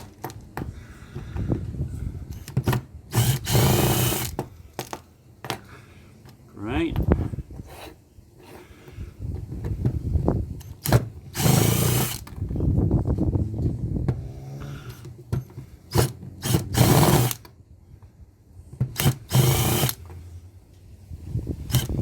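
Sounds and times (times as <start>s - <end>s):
power drill bursts: 3.1s - 4.4s, 10.8s - 12.3s, 15.9s - 17.4s, 19.0s - 20.0s, 21.7s - 22.0s.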